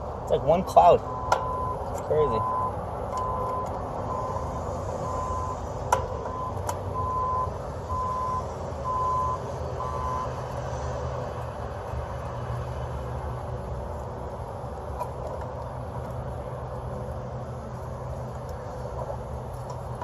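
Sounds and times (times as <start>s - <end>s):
low engine rumble: 0.0s - 20.0s
reversing alarm beeping: 1.0s - 10.4s.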